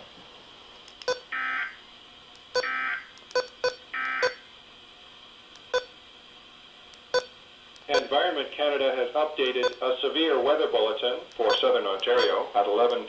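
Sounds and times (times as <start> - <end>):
short electronic beeps: 2.6 - 4.4, 7.1 - 7.3, 11.4 - 12.4.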